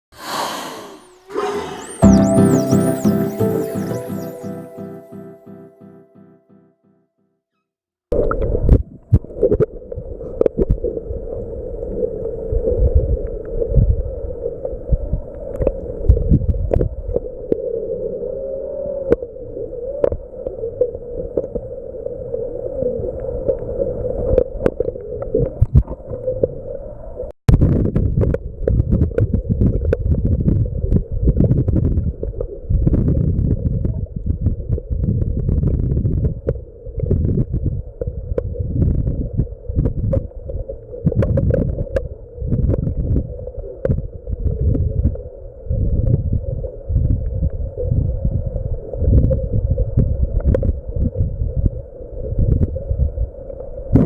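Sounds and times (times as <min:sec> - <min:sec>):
underwater rumbling and sloshing: 0:19.2 - 0:54.0.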